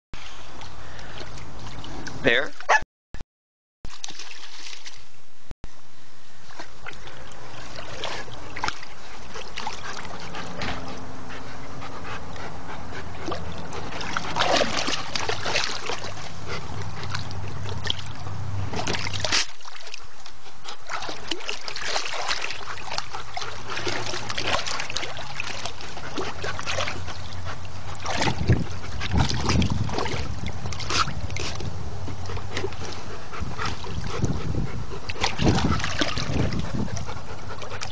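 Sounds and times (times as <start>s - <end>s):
dog splashing in water: 3.9s - 5.0s, 6.6s - 11.0s, 13.2s - 34.5s, 35.1s - 37.9s
steady low hum: 5.2s - 37.9s.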